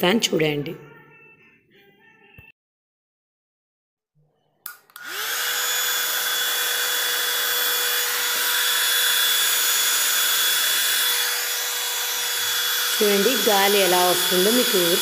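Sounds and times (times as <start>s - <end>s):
hair dryer switch click: 4.7s - 5.4s
hair dryer motor whining and humming: 4.7s - 15.0s.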